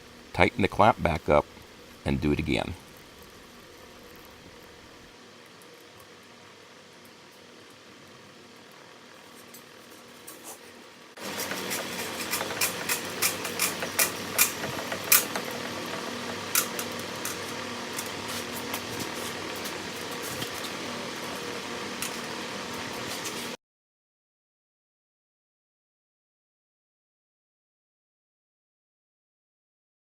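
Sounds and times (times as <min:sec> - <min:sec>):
metal lathe humming: 0:11.2 - 0:23.6
wire clicking and rattling: 0:11.4 - 0:20.7.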